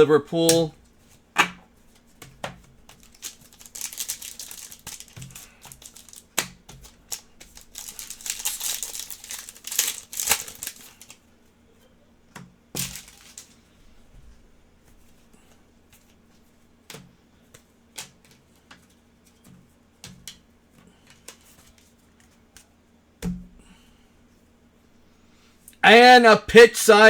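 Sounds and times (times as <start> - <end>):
cards and packaging crinkling: 2.9 - 11.2, 12.8 - 13.7.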